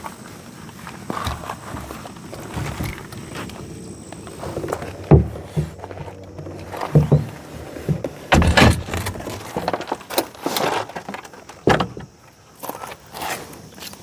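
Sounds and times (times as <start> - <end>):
handling clunks and knocks: 1.0 - 12.2.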